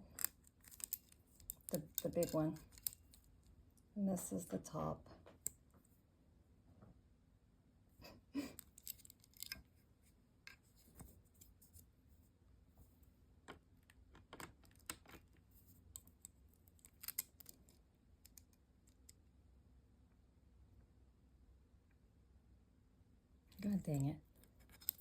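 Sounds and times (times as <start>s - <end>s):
chainsaw chain clicking and scraping: 0.0s - 3.2s.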